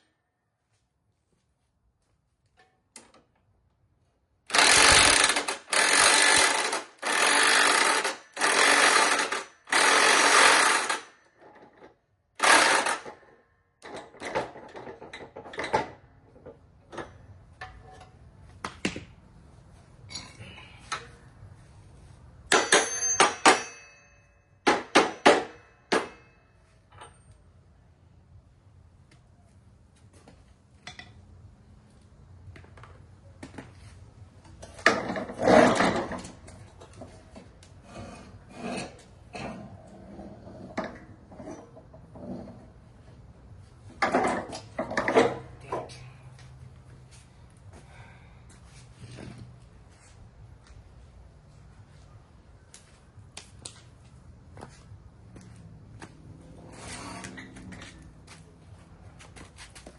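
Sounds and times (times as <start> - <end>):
power tool bursts: 4.5 - 11.1, 12.4 - 13.1
metal tools clinking: 20.0 - 21.1, 22.5 - 24.4.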